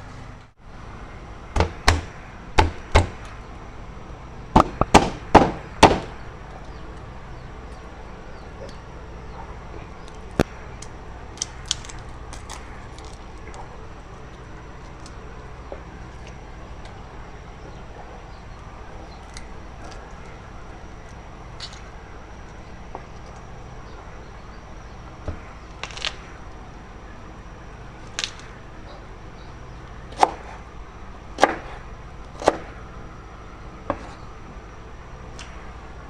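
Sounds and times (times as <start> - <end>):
steady low hum: 0.0 - 36.0
knife chopping on wooden board: 30.2 - 30.6, 31.4 - 31.8, 33.9 - 34.2.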